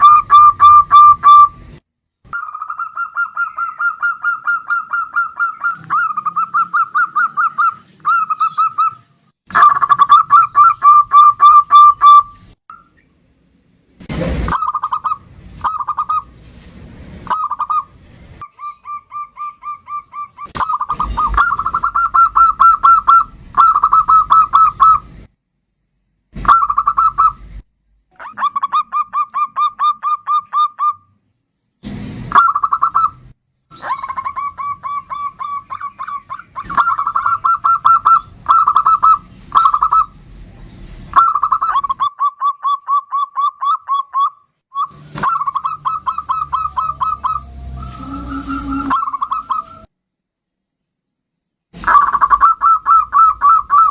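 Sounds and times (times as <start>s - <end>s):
dove cooing: 0.0s - 1.5s, 14.5s - 16.3s, 18.6s - 25.0s, 33.8s - 40.1s, 41.1s - 49.9s, 51.8s - 53.9s.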